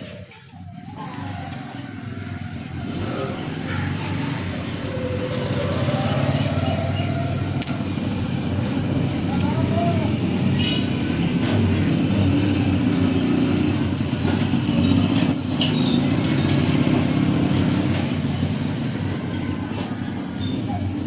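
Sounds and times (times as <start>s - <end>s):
traffic rumble: 0.0s - 21.0s.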